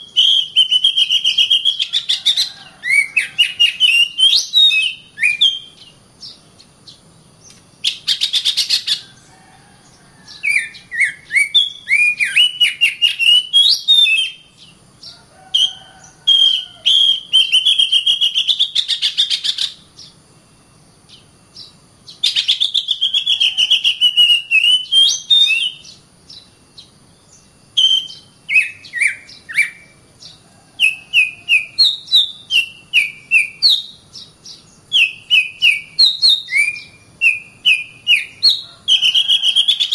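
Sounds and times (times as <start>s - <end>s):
bird singing whistled phrases: 0.0s - 5.9s, 10.4s - 14.6s, 15.5s - 19.8s, 22.2s - 26.0s, 27.8s - 30.0s, 30.8s - 34.0s, 34.9s - 39.9s.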